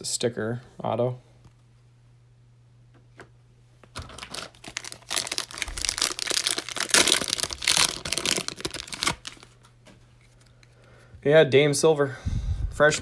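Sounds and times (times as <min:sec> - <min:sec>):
cellophane wrapper crackling: 0:03.9 - 0:09.6.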